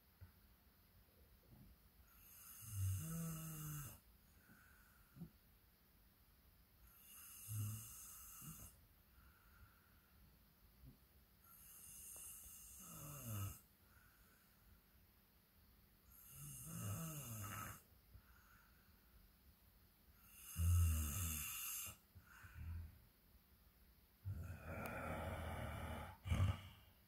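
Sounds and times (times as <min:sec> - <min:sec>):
person snoring loudly: 0:02.2 - 0:04.0, 0:07.0 - 0:08.8, 0:11.5 - 0:13.6, 0:16.1 - 0:17.8, 0:20.2 - 0:22.0, 0:24.3 - 0:26.9.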